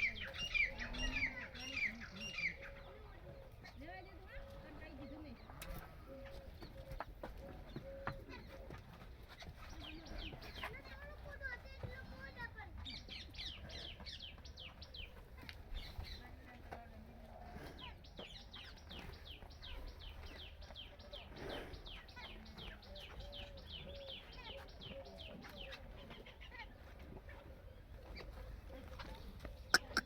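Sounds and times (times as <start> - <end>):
bird chirping high: 29.7 - 30.0.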